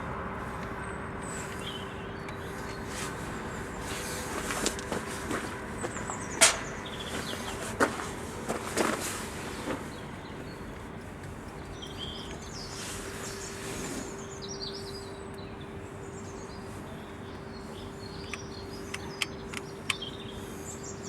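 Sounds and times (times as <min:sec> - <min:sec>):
steady low hum: 0:00.0 - 0:21.0
small birds chirping: 0:00.4 - 0:21.0
sharp clicks: 0:18.2 - 0:20.3.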